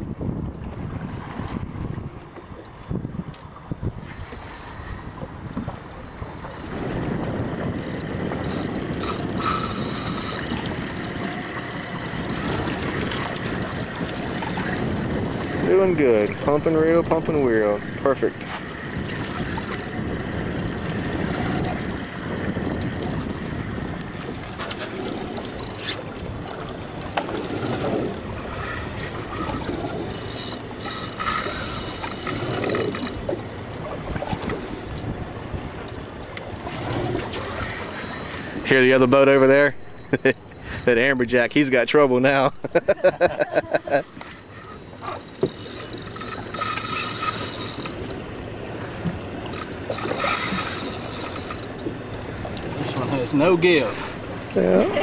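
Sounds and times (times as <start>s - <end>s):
wind buffeting microphone: 0.0s - 42.0s
boat noise: 0.0s - 55.0s
water rushing: 5.7s - 42.5s, 44.8s - 55.0s.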